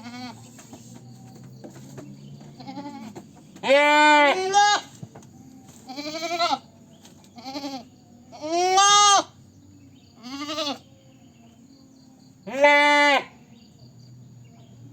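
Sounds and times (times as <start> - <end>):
goat bleating: 0.0 - 0.6, 2.5 - 5.0, 5.8 - 6.7, 7.4 - 9.4, 10.2 - 10.8, 12.5 - 13.3.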